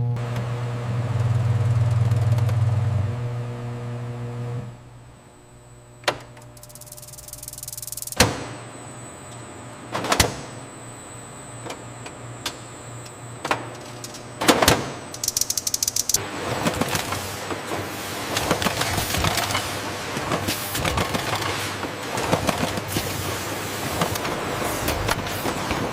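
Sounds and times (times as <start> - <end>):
low machine hum: 0.0 - 25.9
fast ticking: 15.2 - 16.2.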